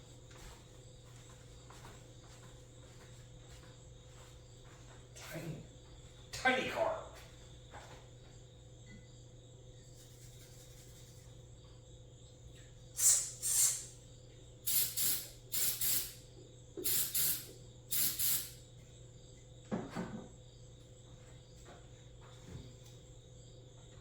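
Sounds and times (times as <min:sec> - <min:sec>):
crickets chirping: 0:00.0 - 0:24.0
hissing spray bursts: 0:13.0 - 0:13.9, 0:14.7 - 0:16.2, 0:16.8 - 0:18.6.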